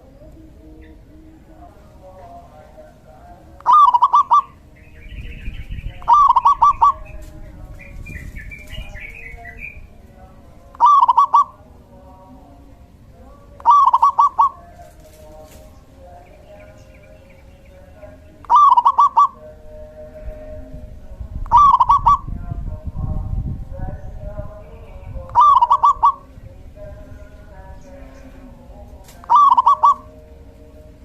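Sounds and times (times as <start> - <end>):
small birds twittering: 0.0 - 19.6, 21.5 - 22.4, 23.9 - 31.0
dove cooing: 3.6 - 7.2, 10.7 - 11.6, 13.6 - 15.6, 18.4 - 19.5, 21.5 - 22.4, 25.2 - 26.4, 27.9 - 30.4.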